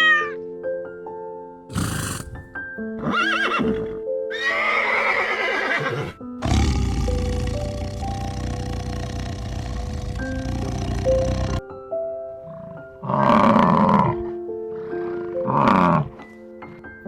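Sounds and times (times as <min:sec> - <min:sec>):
background music: 0:00.0 - 0:17.0
horse whinnying: 0:01.7 - 0:07.8.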